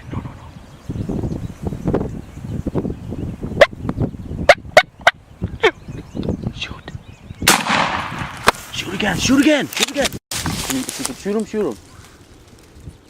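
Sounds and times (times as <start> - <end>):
loud gunshot: 7.5 - 8.3, 10.4 - 11.0.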